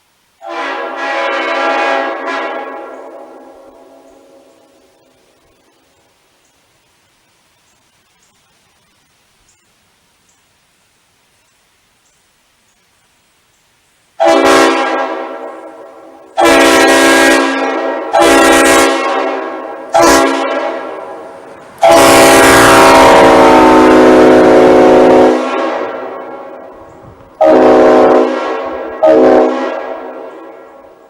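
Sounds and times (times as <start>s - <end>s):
horn echo: 0.4s - 4.6s, 14.2s - 30.8s
train horn blasts: 0.4s - 4.6s, 14.2s - 26.8s, 27.4s - 30.8s.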